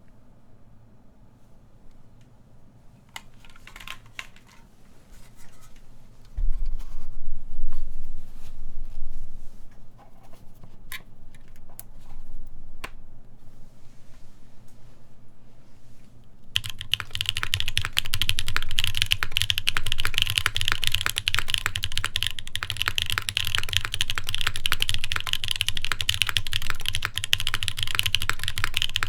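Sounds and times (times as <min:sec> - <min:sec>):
mechanical keyboard clicks: 0:03.2 - 0:04.4, 0:16.6 - 0:29.0.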